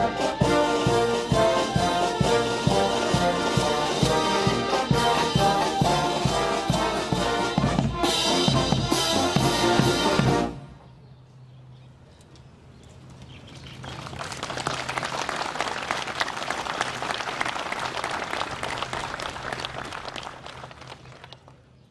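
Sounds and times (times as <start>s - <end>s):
audience applauding: 13.8s - 21.6s.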